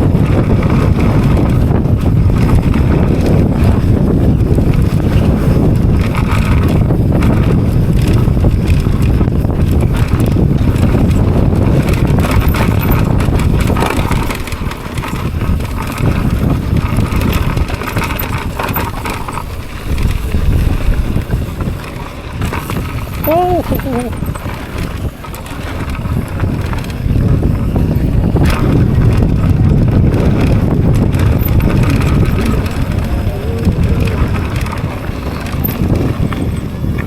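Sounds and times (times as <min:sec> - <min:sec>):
mountain bike rumble and rattle: 0:00.0 - 0:37.0
wind buffeting microphone: 0:00.0 - 0:37.0.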